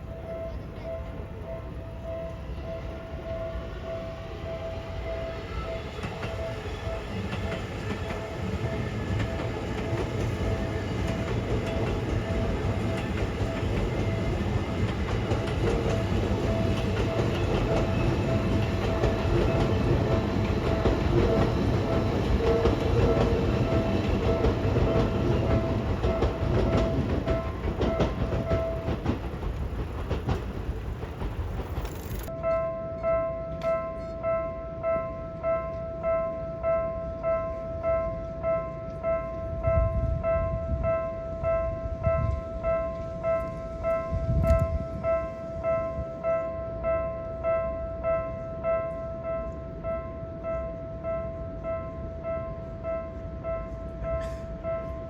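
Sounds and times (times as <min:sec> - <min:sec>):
level-crossing bell clanging: 0:00.0 - 0:29.6
train passing: 0:00.0 - 0:55.0.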